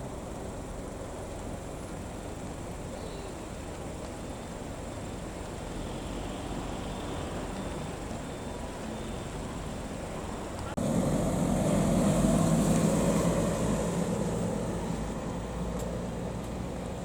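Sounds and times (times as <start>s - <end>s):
traffic rumble: 0.0s - 17.0s
vehicle driving past: 10.8s - 17.0s.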